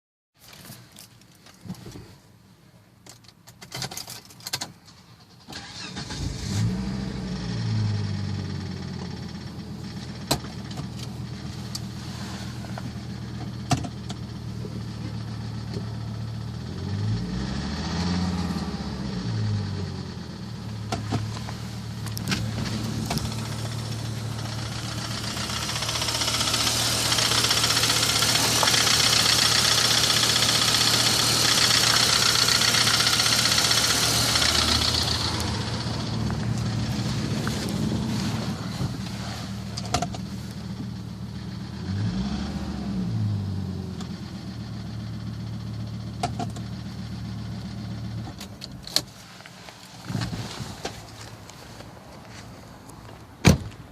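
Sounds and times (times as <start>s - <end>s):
car engine starting and idling: 3.8s - 53.9s
engine knocking: 24.5s - 35.3s.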